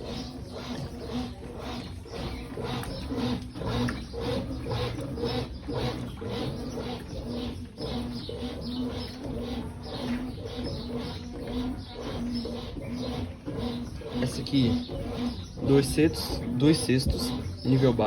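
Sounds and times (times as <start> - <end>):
washing machine motor pulsing: 0.0 - 18.0
water sloshing in tub: 0.0 - 18.0.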